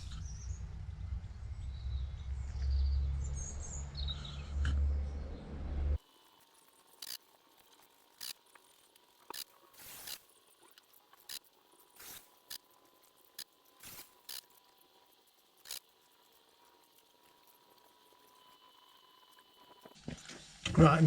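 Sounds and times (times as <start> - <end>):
loud low rumble: 0.0 - 6.0.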